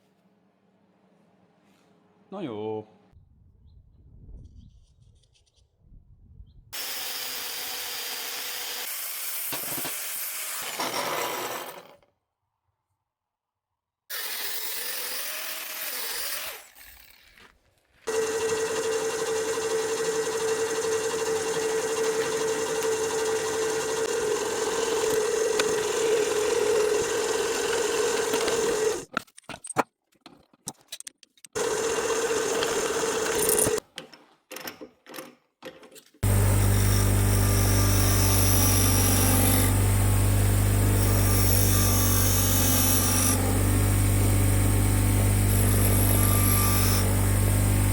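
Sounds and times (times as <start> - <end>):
handheld power tool whining: 6.8 - 12.0, 14.1 - 29.1, 31.6 - 33.8, 36.2 - 47.9.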